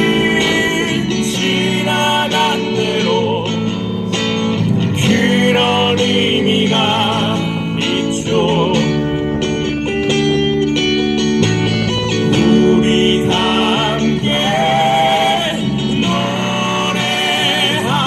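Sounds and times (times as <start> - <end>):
person singing: 0.0 - 3.6, 12.3 - 18.0
strummed acoustic guitar: 0.0 - 18.0.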